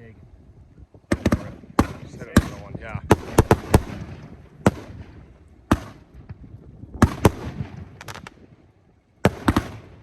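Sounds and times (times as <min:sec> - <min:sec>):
fireworks booming: 0:01.1 - 0:08.6, 0:09.2 - 0:10.0
small firework pops: 0:07.0 - 0:08.4.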